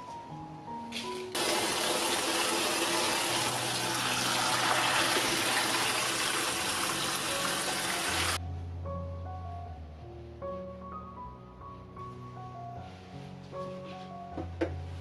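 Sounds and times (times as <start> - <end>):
water running from a tap: 1.4 - 8.4.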